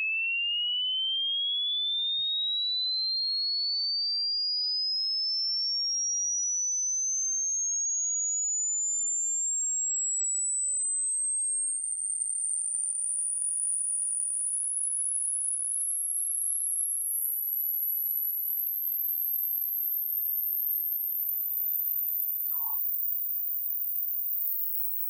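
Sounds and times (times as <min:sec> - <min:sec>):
rising sine tone: 0:22.5 - 0:22.8.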